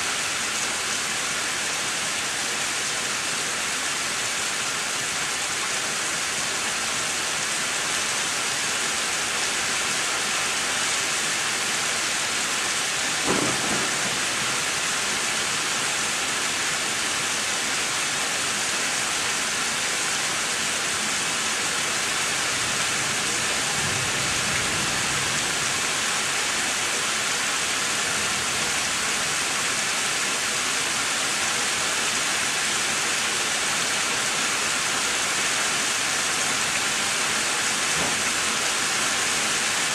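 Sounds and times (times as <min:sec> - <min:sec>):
steady rain: 0:00.0 - 0:39.9
low rumble of thunder: 0:13.2 - 0:15.3
sharp thunderclap: 0:13.2 - 0:15.5.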